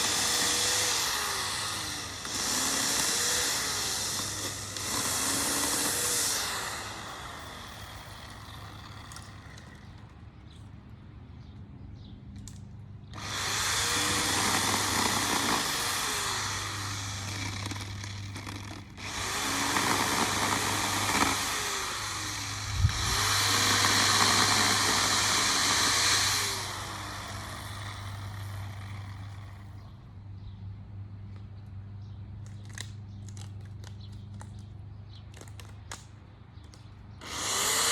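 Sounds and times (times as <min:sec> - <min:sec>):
chainsaw cutting wood: 0:00.0 - 0:10.0, 0:13.1 - 0:29.7, 0:37.2 - 0:37.9.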